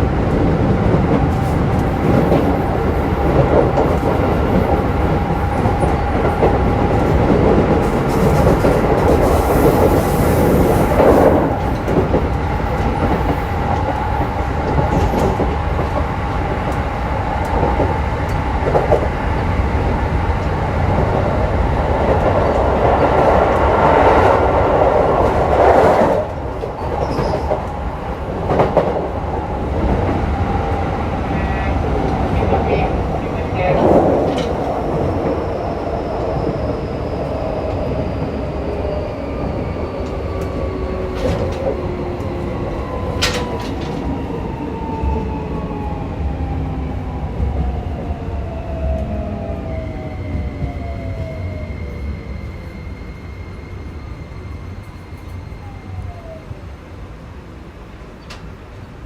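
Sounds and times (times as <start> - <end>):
train wheels rumbling on rails: 0.0 - 59.0
wheels clacking over rail joints: 40.4 - 44.3.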